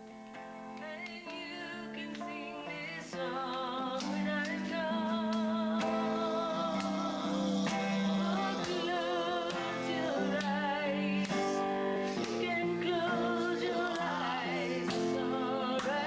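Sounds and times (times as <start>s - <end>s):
instrumental backing music: 0.0s - 16.0s
person singing with vibrato: 0.8s - 16.0s.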